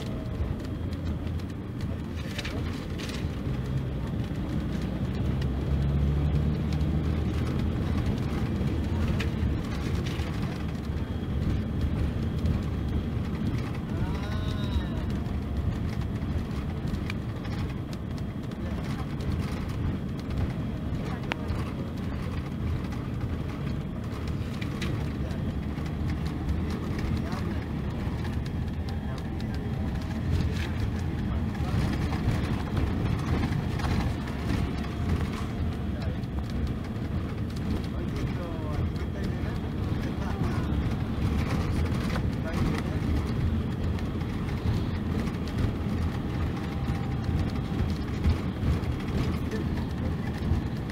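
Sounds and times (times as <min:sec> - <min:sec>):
diesel engine rumbling: 0:00.0 - 0:50.9.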